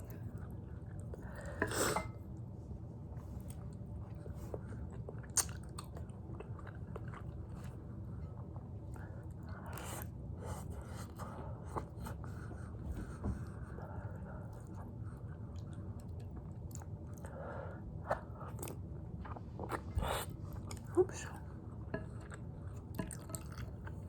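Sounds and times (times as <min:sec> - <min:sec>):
close-miked chewing and biting: 0:04.1 - 0:07.7.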